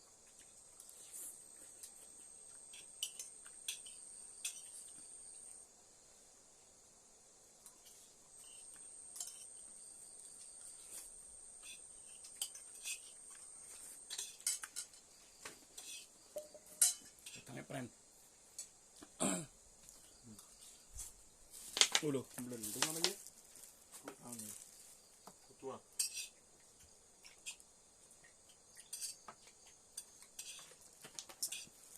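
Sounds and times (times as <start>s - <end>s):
cutlery clinking on a dish: 2.7s - 5.0s, 9.1s - 9.6s, 11.6s - 15.0s, 15.8s - 17.5s, 26.0s - 26.4s, 28.8s - 29.3s, 31.4s - 31.8s.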